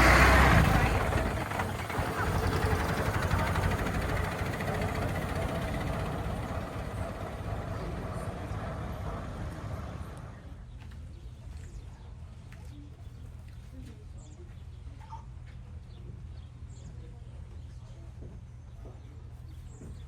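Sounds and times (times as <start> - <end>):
vehicle engine running: 0.0 - 10.8.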